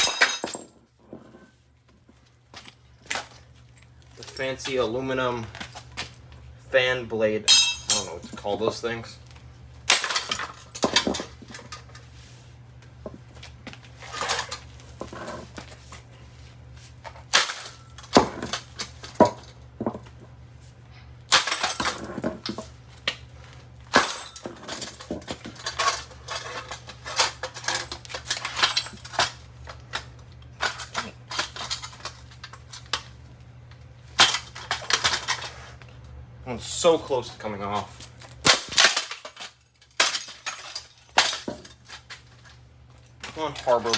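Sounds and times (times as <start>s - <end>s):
steady low hum: 0.1s - 39.2s
metallic banging and clattering: 7.5s - 8.4s.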